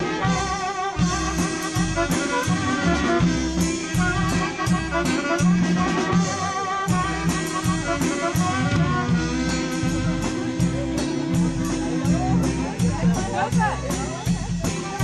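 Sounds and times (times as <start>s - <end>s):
wavering horn melody: 0.0s - 11.5s
bass: 0.0s - 15.0s
drum kit beat: 0.0s - 15.0s
live band playing: 0.0s - 15.0s.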